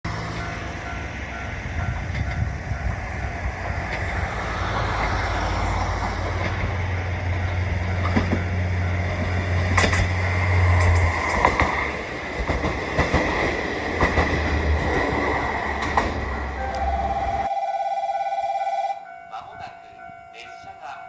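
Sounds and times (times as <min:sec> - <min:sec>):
diesel engine droning: 0:00.0 - 0:12.9, 0:14.3 - 0:17.5.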